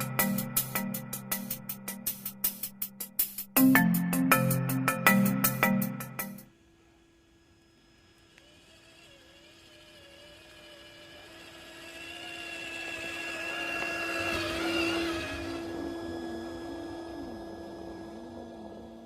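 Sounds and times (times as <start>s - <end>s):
rc car electric motor whining: 6.6s - 19.0s.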